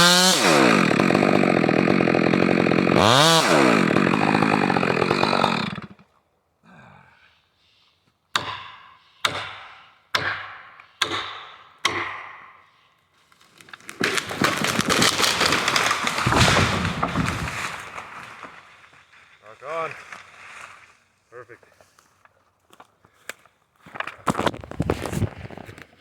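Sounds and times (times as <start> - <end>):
chainsaw running at full throttle: 0.0 - 6.0.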